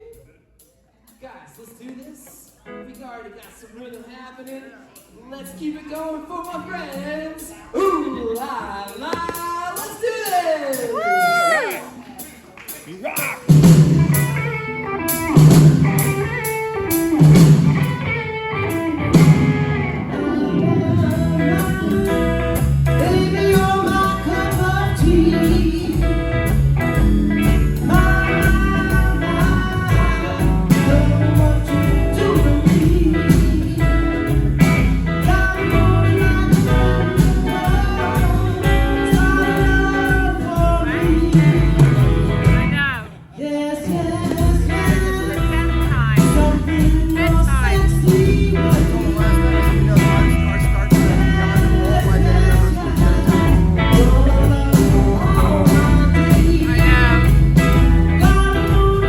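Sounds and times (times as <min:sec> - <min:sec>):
live rock band playing: 0:09.4 - 0:59.0
person singing: 0:18.7 - 0:59.0.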